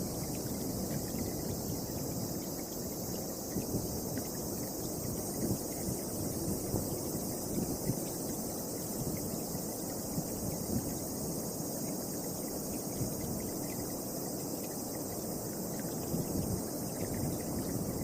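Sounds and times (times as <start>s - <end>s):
wind buffeting microphone: 0.0s - 11.1s, 16.0s - 18.0s
insects chorus: 0.0s - 18.0s.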